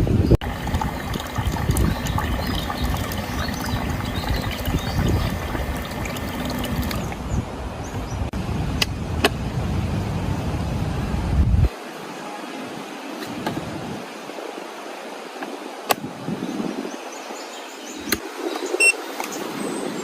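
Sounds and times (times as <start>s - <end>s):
wind buffeting microphone: 0.0s - 11.7s, 16.0s - 17.1s.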